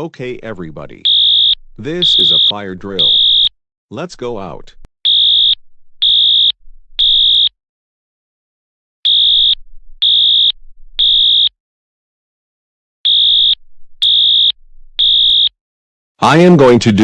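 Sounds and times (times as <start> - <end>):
fire alarm beeping: 1.0 - 3.5, 5.1 - 7.5, 9.1 - 11.5, 13.1 - 15.5.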